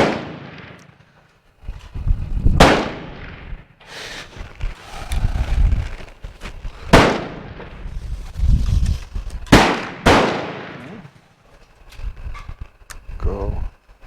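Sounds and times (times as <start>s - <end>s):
rifle shots with echo: 0.0s - 1.1s, 2.6s - 3.5s, 6.9s - 7.7s, 9.5s - 11.1s.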